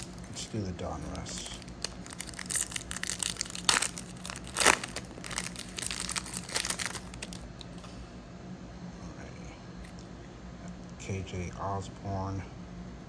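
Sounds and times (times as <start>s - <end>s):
foil wrapper crinkling: 0.0s - 7.6s
sharp foil rips: 1.3s - 7.4s.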